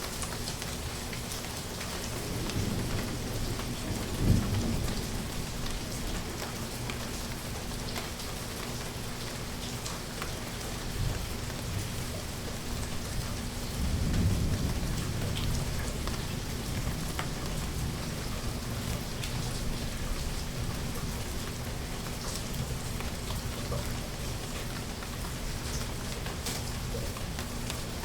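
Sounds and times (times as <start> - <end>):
heavy rain: 0.0 - 28.0
low roll of thunder: 2.1 - 6.4, 13.0 - 20.7.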